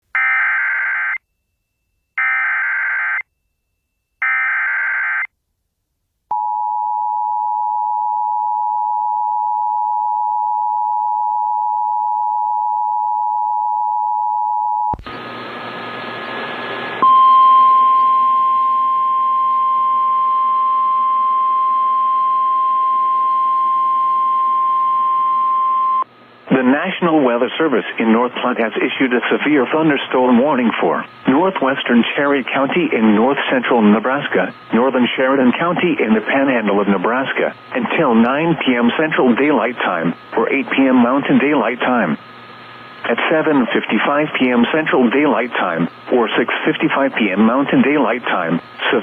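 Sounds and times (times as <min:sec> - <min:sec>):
single steady warning tone: 0:06.3 - 0:26.1
faint hum: 0:06.3 - 0:49.0.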